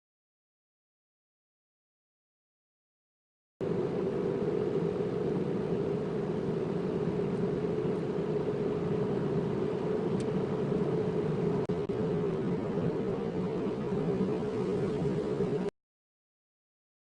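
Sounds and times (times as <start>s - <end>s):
car engine and road noise: 3.6s - 15.7s.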